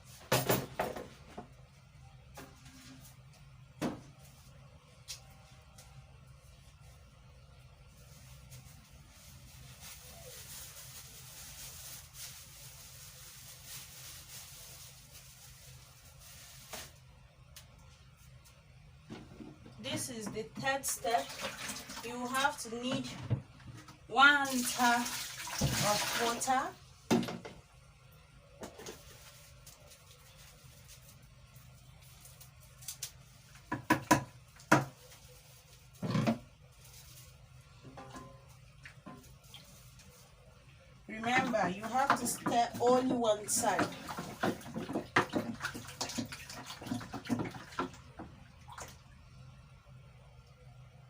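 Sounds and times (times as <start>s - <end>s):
low steady hum: 0.0s - 51.0s
liquid being stirred by hand: 41.2s - 48.4s.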